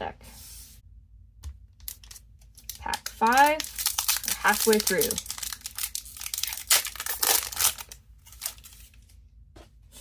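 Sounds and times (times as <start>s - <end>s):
wrapper tearing and crinkling: 1.9s - 9.0s.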